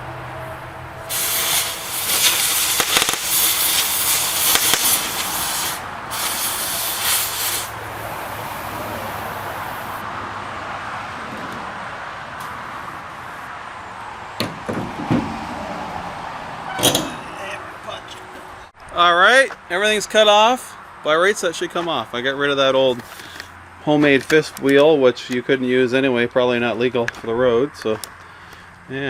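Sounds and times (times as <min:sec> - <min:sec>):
cutting torch hissing and crackling: 0:01.1 - 0:10.0
sharp knocks: 0:14.4 - 0:15.4.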